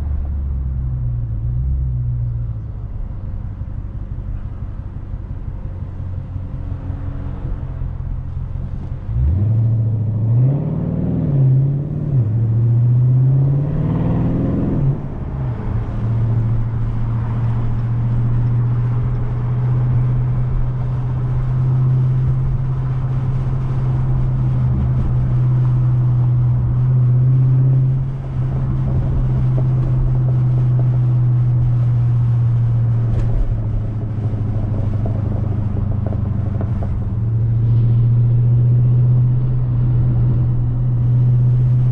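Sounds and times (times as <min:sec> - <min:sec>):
car engine through loud exhaust: 0:00.0 - 0:41.9.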